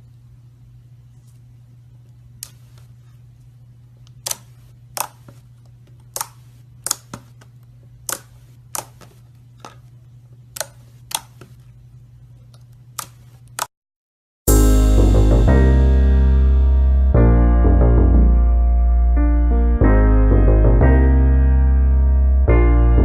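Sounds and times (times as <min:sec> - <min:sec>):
slime popping and clicking: 0:04.2 - 0:05.2, 0:06.1 - 0:07.2, 0:08.1 - 0:09.1.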